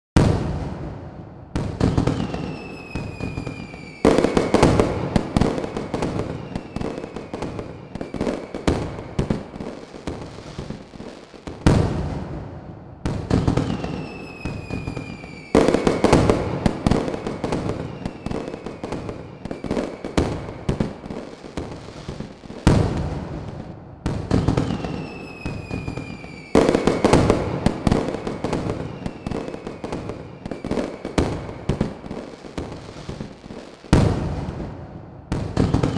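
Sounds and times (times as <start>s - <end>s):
fireworks bangs and crackling: 0.2s - 35.9s
falling firework whistle: 1.6s - 9.5s, 13.3s - 23.0s, 24.3s - 34.4s, 35.4s - 35.9s.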